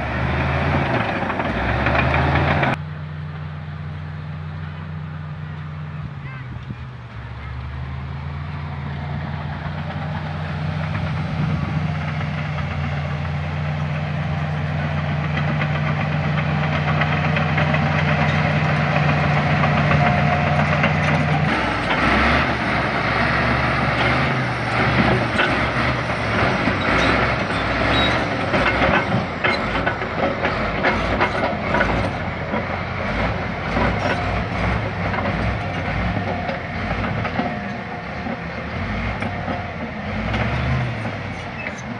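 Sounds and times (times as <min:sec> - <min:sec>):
crawler tracks clattering: 0:00.0 - 0:02.8, 0:08.6 - 0:41.9
bulldozer diesel engine running: 0:00.0 - 0:41.9.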